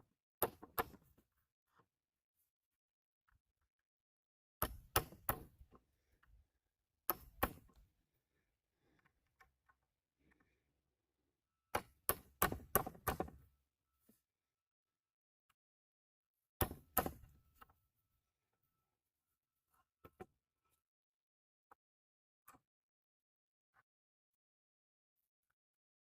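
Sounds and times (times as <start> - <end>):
hammer striking wood: 4.6 - 5.6, 7.1 - 7.8, 11.7 - 13.4, 16.6 - 17.4.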